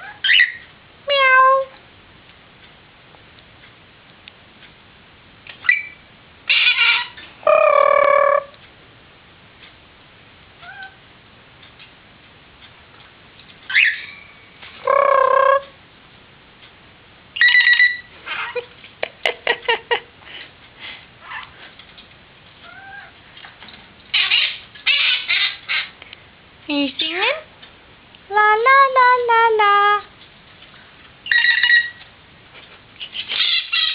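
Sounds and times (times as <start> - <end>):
parrot chirping and squawking: 0.0 - 1.7, 5.6 - 8.5, 10.6 - 11.0, 13.7 - 15.7, 17.4 - 18.7, 21.2 - 21.6, 22.6 - 23.2, 24.1 - 26.0, 31.2 - 32.0, 33.0 - 33.9
parrot warbling phone ring: 31.3 - 32.0.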